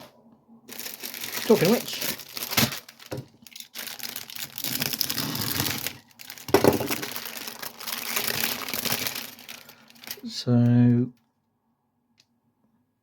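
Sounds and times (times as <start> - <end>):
plastic packaging crinkling: 0.7 - 10.4
loud plastic crackle: 0.7 - 10.5.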